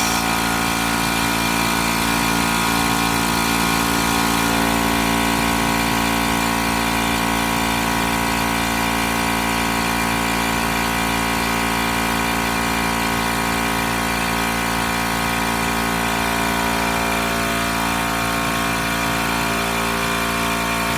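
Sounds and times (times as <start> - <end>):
motor running steadily: 0.0 - 20.9.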